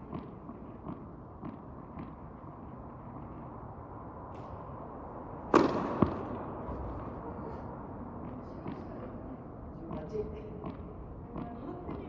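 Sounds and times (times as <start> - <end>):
racket striking ball: 5.5 - 6.4
tennis ball bounce: 5.5 - 6.4.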